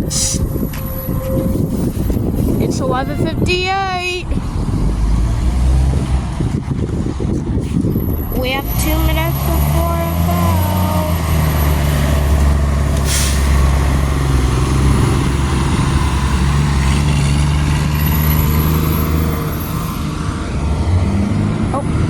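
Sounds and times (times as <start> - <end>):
air brakes hiss: 0.0 - 0.6, 13.0 - 13.6
heavy vehicle engine droning: 0.0 - 22.0.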